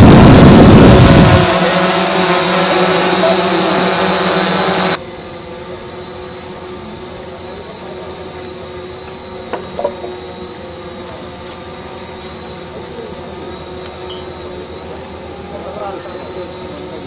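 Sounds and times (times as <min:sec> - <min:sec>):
diesel engine humming: 0:00.0 - 0:08.8.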